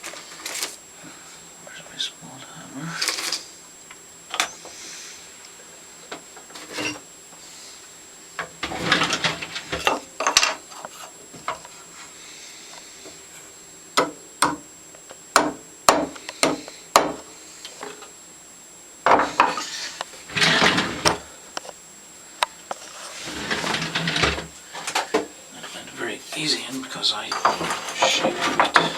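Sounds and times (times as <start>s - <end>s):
metal rubbing and scraping: 19.2s - 21.2s, 22.8s - 24.5s, 27.4s - 28.9s.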